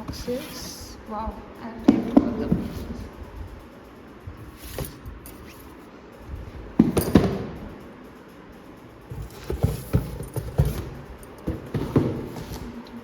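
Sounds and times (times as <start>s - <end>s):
cardboard boxes knocking and bumping: 9.1s - 12.7s.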